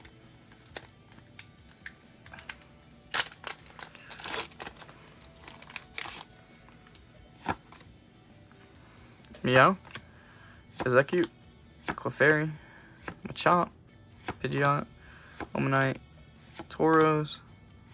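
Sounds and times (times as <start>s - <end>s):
cards clicking: 0.0s - 7.9s, 9.2s - 10.1s, 10.7s - 17.2s
foil wrapper tearing and crinkling: 2.3s - 6.4s.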